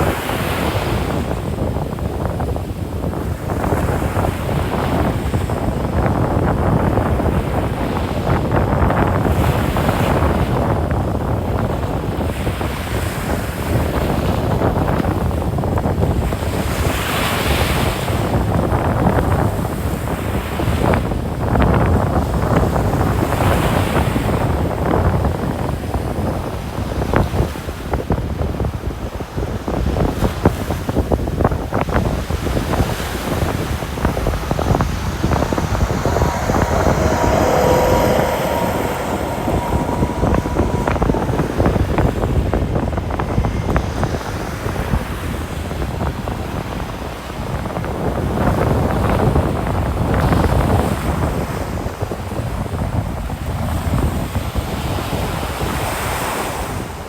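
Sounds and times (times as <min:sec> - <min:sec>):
wind buffeting microphone: 0:00.0 - 0:56.6
faint steady tone: 0:33.4 - 0:44.7.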